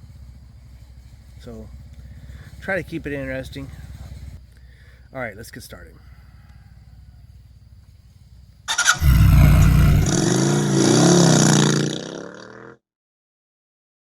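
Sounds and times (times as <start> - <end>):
vehicle engine starting and revving: 8.6 - 12.4.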